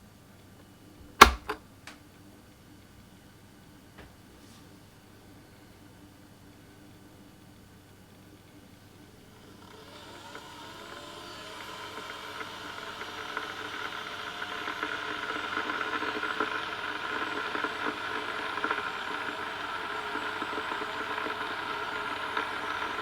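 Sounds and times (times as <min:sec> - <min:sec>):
kettle hissing and crackling: 0:09.3 - 0:23.0.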